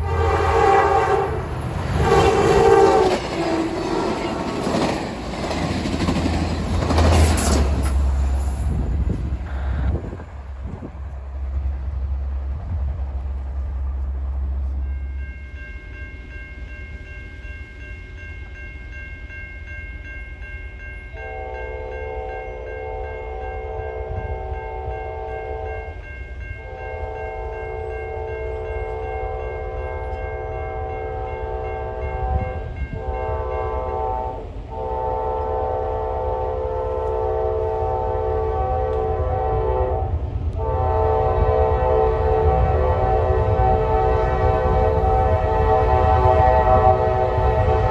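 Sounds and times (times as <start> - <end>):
locomotive air horn: 0.0 - 4.5, 21.2 - 25.9, 26.6 - 47.9.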